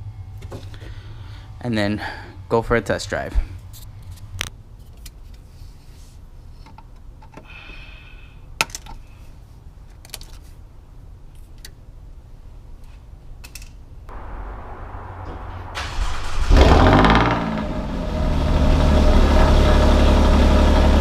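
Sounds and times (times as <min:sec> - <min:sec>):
low hum: 0:14.1 - 0:21.0
car engine cranking: 0:14.2 - 0:21.0.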